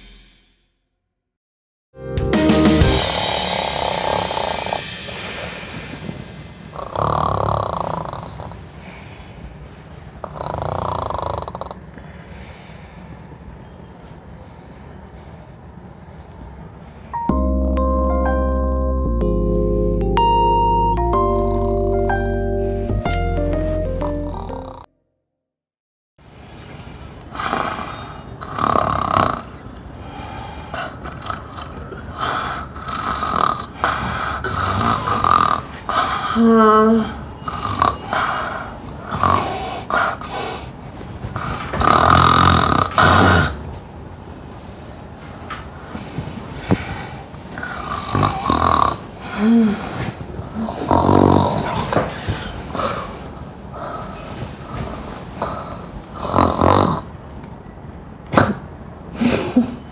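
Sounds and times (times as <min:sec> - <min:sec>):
person snoring loudly: 0:02.7 - 0:05.2, 0:06.8 - 0:08.6, 0:10.2 - 0:11.8, 0:24.0 - 0:24.9, 0:27.3 - 0:29.6, 0:31.0 - 0:38.4, 0:39.0 - 0:40.0, 0:41.4 - 0:43.6, 0:47.6 - 0:49.8, 0:50.6 - 0:52.1, 0:55.4 - 0:57.1.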